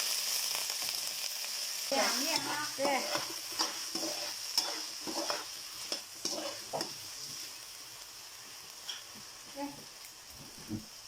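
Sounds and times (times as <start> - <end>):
food sizzling in hot oil: 0.0 - 11.0
spatula scraping pan: 1.9 - 7.5.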